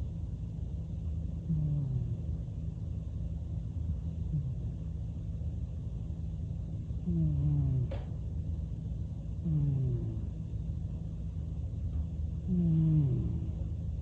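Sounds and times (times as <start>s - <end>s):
steady low rumble: 0.0s - 14.0s
cat snoring: 1.4s - 2.4s, 4.3s - 4.7s, 7.0s - 8.1s, 9.4s - 10.4s, 12.4s - 14.0s.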